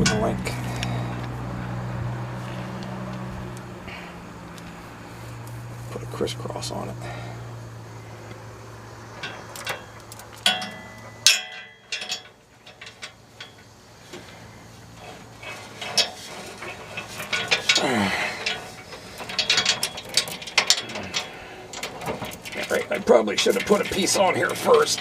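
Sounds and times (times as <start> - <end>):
low steady hum: 0.0 - 25.0
metal chain clinking: 9.2 - 13.8, 14.9 - 25.0.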